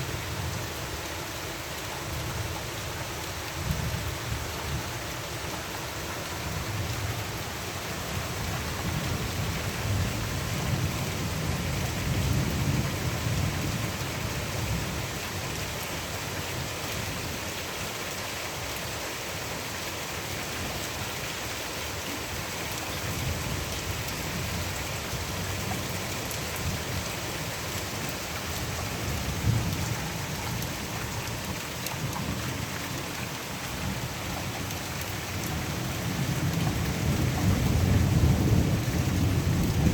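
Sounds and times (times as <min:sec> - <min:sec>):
steady rain falling: 0:00.0 - 0:39.9
low rolling thunder: 0:35.2 - 0:39.9.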